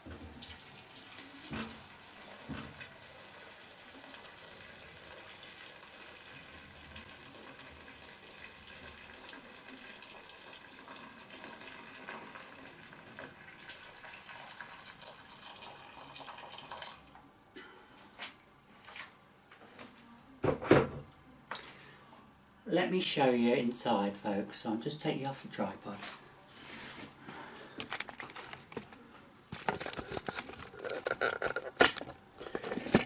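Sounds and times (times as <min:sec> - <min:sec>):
water pouring from a kettle: 0:00.0 - 0:17.2, 0:29.5 - 0:33.0.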